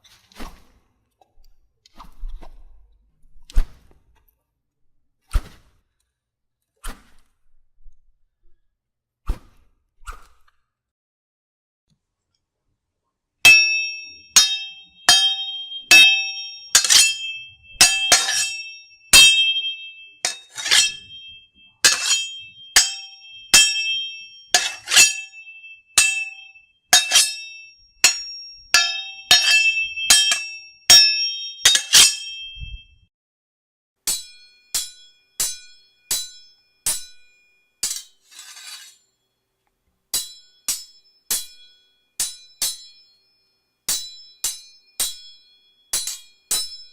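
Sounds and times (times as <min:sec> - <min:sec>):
short swish: 0:09.3 - 0:10.5
light metallic clinks: 0:13.5 - 0:32.8
sword blades clashing: 0:13.5 - 0:32.9, 0:34.1 - 0:39.0, 0:40.2 - 0:43.0, 0:43.9 - 0:45.4, 0:46.0 - 0:46.9.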